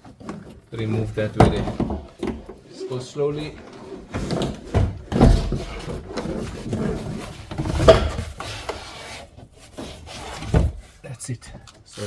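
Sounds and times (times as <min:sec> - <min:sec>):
knocking: 0:00.0 - 0:08.9
fabric rustling and scraping: 0:00.0 - 0:11.0.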